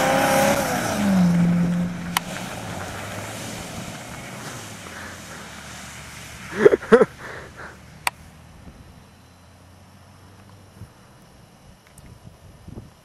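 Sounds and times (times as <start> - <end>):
loud rushing noise: 0.0 - 7.9
truck engine running hard: 0.0 - 10.6.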